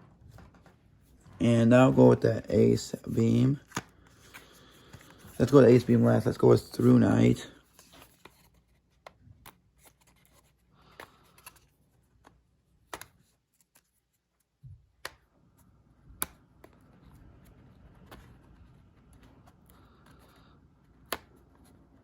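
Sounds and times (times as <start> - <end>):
clicks and taps of packaging: 10.9 - 13.9.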